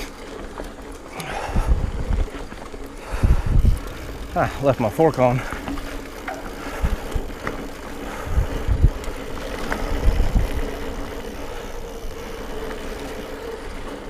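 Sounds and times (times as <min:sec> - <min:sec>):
tyres rolling on dirt: 0:00.0 - 0:14.0
wind rushing over microphone: 0:01.2 - 0:04.7, 0:08.0 - 0:12.1.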